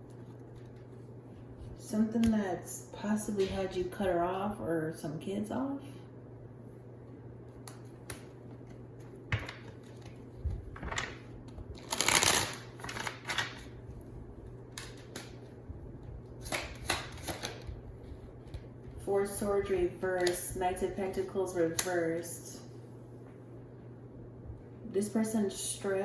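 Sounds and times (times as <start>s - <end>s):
faint steady hum: 0.0s - 26.0s
cards being shuffled: 7.5s - 13.7s, 16.4s - 18.7s.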